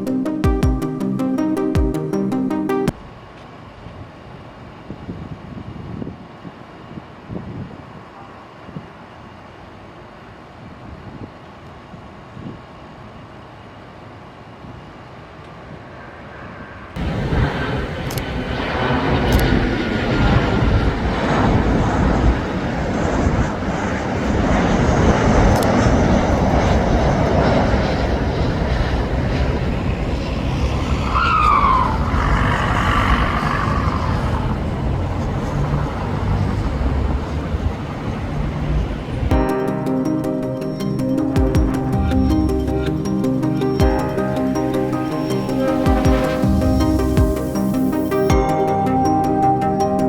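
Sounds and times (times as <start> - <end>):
jet engines roaring: 15.9 - 50.0
falling jet whine: 16.0 - 50.0.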